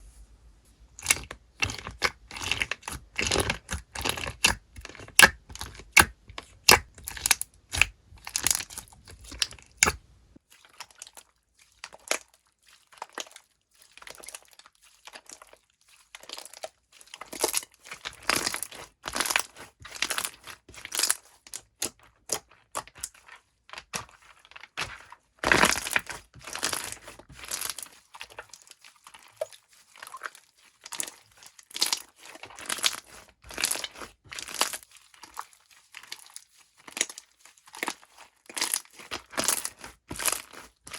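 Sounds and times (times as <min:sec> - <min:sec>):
slime crackling and popping: 0:01.0 - 0:10.0, 0:16.1 - 0:23.2, 0:23.8 - 0:40.9.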